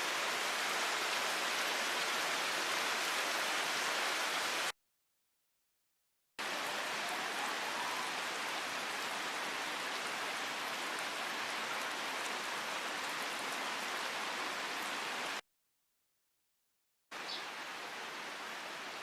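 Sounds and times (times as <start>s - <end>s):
heavy rain falling: 0.0s - 4.7s, 6.4s - 15.4s.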